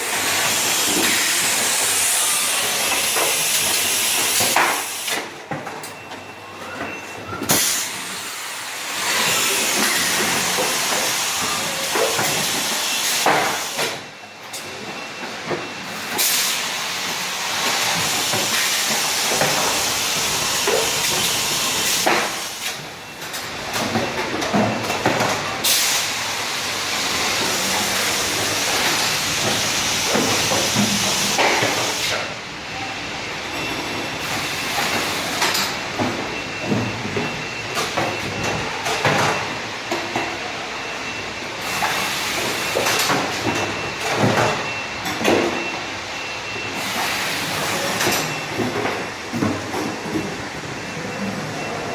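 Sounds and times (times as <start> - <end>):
machine hissing: 0.0 - 5.2, 7.6 - 14.0.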